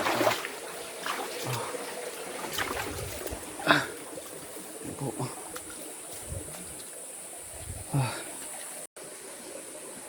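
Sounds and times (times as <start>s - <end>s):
stream water trickling: 0.0s - 10.0s.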